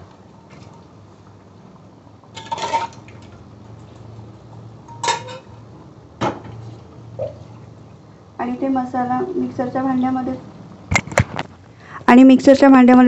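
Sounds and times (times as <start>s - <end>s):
metal utensils clattering on pot: 2.3s - 3.1s, 4.9s - 5.6s.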